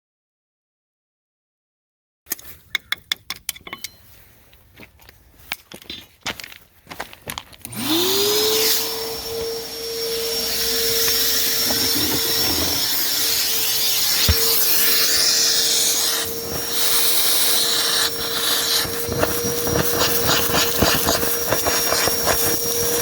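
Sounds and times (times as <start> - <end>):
sharp clicks and knocks: 2.3 - 4.0
motor spinning with hiss: 7.7 - 23.0.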